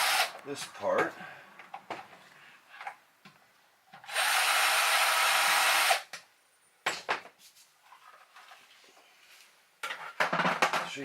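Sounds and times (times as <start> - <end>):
cordless drill running: 0.0 - 0.4, 4.1 - 6.1.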